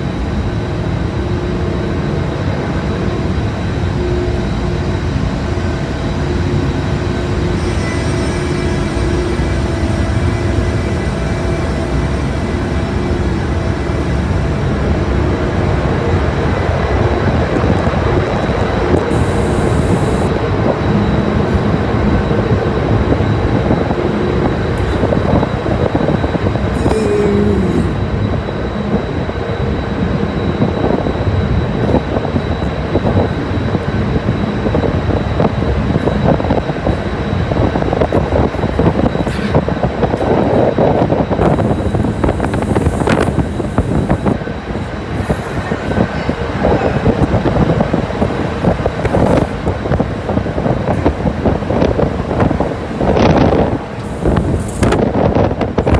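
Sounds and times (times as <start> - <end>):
faint steady tones: 0.0 - 39.2
ferry engine low rumble: 0.0 - 55.9.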